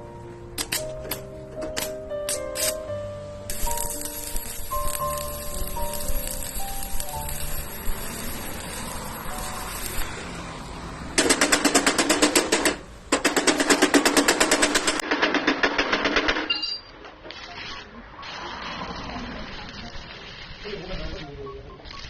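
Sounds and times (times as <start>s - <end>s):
fast mechanical clatter: 11.2s - 16.5s.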